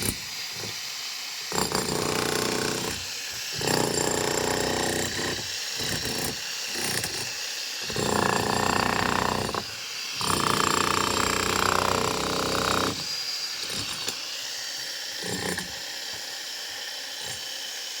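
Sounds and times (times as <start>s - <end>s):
power tool cutting concrete: 0.0s - 0.9s, 1.5s - 17.8s.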